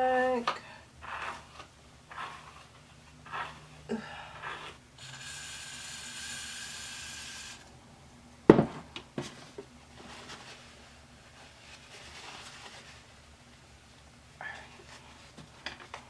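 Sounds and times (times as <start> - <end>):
steady hiss: 4.6 - 7.7.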